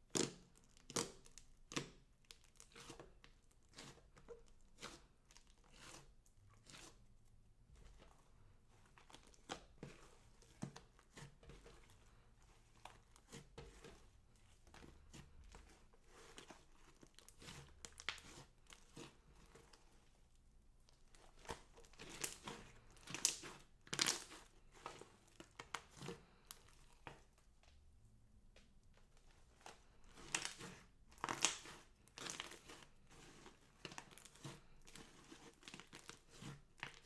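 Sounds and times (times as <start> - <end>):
slime squeezed with sticky crackles: 0.0 - 3.0, 16.3 - 19.1, 21.1 - 26.7, 30.0 - 37.0.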